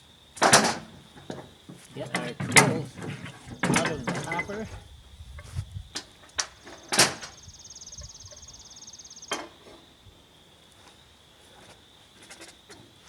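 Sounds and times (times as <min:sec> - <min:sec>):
hand tools knocking and clattering: 0:00.4 - 0:04.7.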